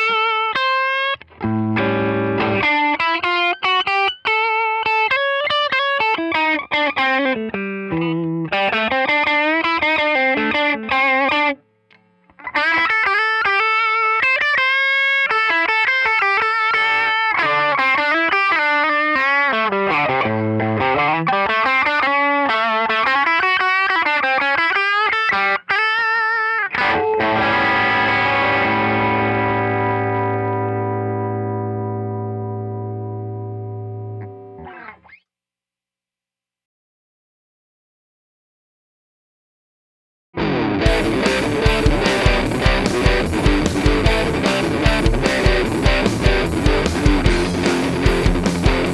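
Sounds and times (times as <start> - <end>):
ringing guitar chord: 26.9 - 34.7, 40.4 - 48.9
electric guitar fast runs: 40.9 - 48.9.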